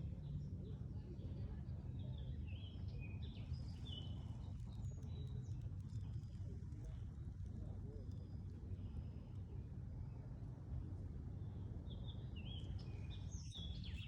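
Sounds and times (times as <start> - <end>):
songbirds chirping and twittering: 0.0 - 6.4, 11.2 - 14.0.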